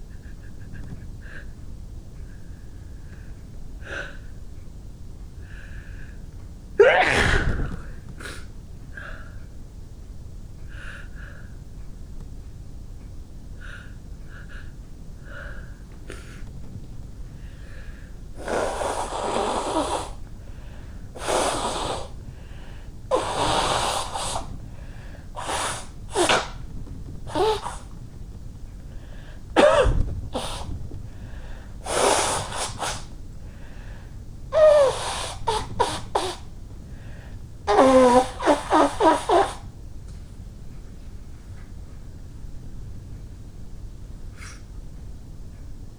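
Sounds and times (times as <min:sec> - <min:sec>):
quiet breaths: 0:00.0 - 0:06.8, 0:07.4 - 0:45.9
woman sneezing: 0:06.8 - 0:08.0, 0:25.4 - 0:26.6, 0:29.6 - 0:30.7, 0:34.6 - 0:36.4, 0:37.7 - 0:39.6
woman blowing her nose: 0:06.8 - 0:08.4, 0:18.4 - 0:20.2, 0:21.2 - 0:22.2, 0:23.1 - 0:24.6, 0:25.4 - 0:26.6, 0:27.3 - 0:27.9, 0:29.6 - 0:30.8, 0:31.8 - 0:33.2, 0:34.5 - 0:36.5, 0:37.7 - 0:39.7.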